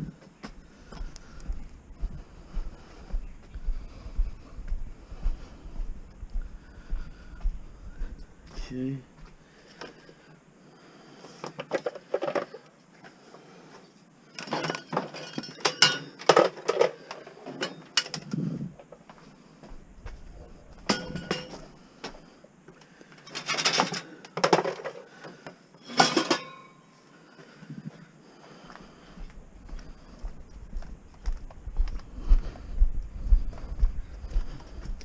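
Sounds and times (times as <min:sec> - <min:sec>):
scrap metal clinking and clattering: 0:14.4 - 0:18.2, 0:20.9 - 0:21.6, 0:23.2 - 0:25.0, 0:25.8 - 0:26.8.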